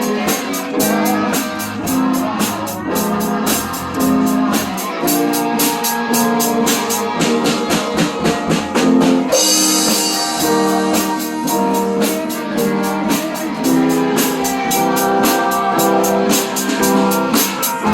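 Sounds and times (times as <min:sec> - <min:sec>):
pop-rock band playing: 0:00.0 - 0:17.9
cymbal crash: 0:09.3 - 0:12.4.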